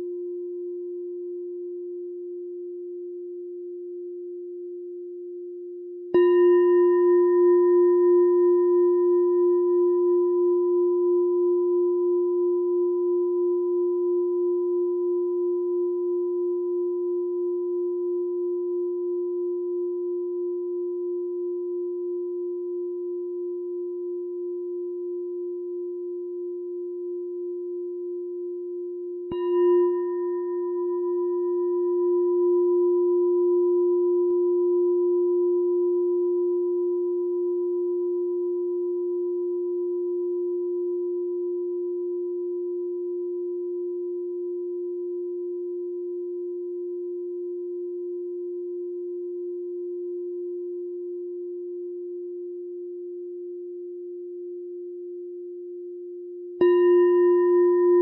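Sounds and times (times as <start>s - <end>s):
meditation bell ringing: 6.1s - 16.3s, 29.3s - 53.4s, 56.6s - 58.0s.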